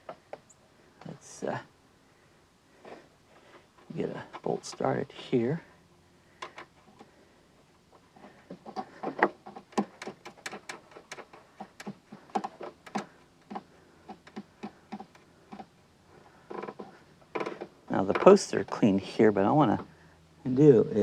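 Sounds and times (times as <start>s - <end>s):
small metal clicks and taps: 8.5s - 15.7s.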